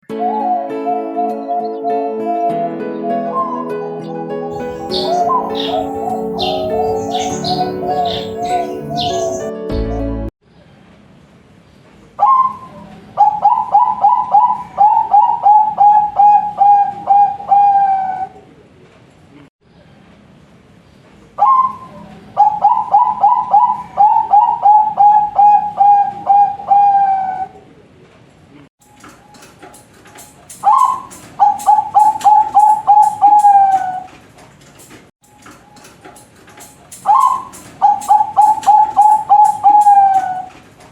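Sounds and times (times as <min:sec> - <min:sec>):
dove cooing: 0:00.1 - 0:09.5, 0:13.2 - 0:18.4, 0:22.4 - 0:27.6, 0:30.6 - 0:34.1, 0:37.1 - 0:40.5.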